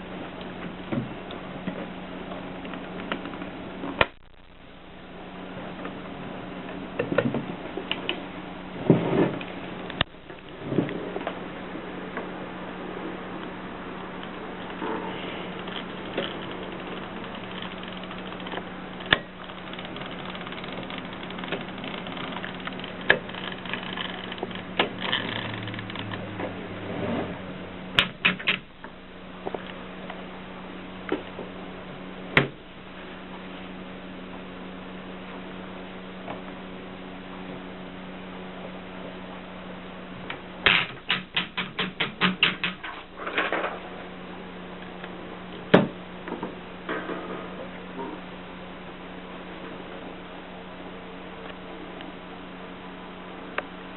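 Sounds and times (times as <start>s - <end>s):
steady low hum: 0.0s - 53.9s
typewriter clacks: 40.7s - 42.9s.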